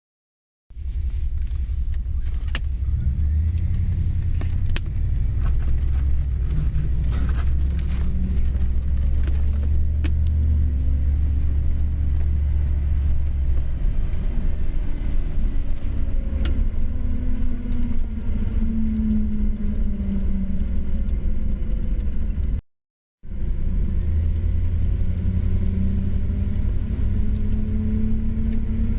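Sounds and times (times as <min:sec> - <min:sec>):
pitched hum: 0:00.8 - 0:22.6
vehicle drivetrain rumbling: 0:00.8 - 0:22.6, 0:23.2 - 0:28.9.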